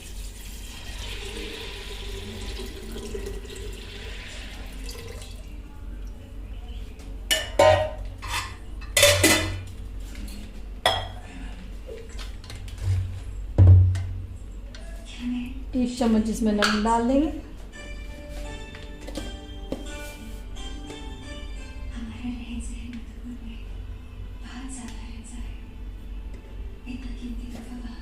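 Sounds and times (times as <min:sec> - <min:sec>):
water pouring into a pot: 0:00.0 - 0:05.6
metal pots clanking: 0:07.3 - 0:09.7.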